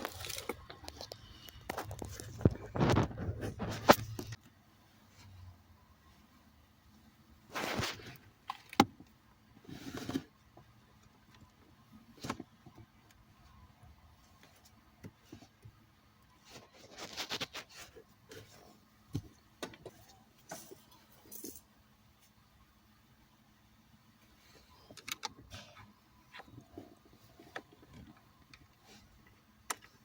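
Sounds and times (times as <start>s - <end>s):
scraping and rustling: 0.0s - 4.4s, 16.4s - 18.9s.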